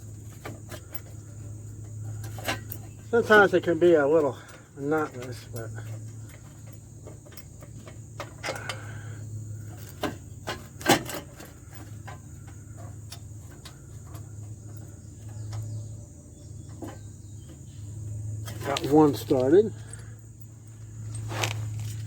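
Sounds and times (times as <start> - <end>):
crickets chirping: 0.0 - 22.0
steady low hum: 0.0 - 22.0
metallic clicks and knocks: 0.2 - 8.9
metal clank: 10.0 - 13.8.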